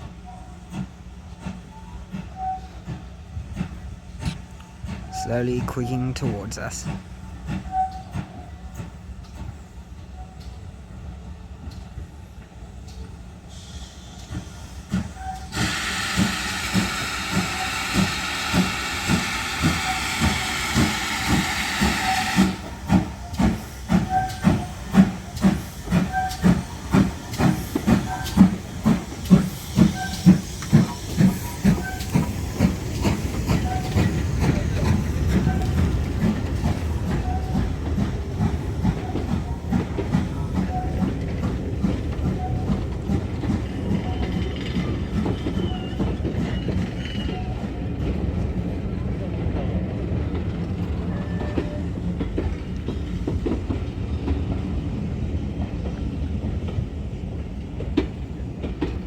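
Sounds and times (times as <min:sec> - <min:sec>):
steam locomotive rhythmic beat: 0:00.0 - 0:09.8, 0:13.6 - 0:48.3
steam hissing: 0:13.4 - 0:47.4.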